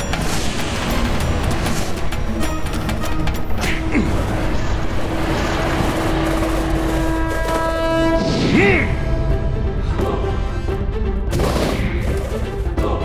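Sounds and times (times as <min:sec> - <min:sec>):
dense rushing noise: 0:00.0 - 0:09.6.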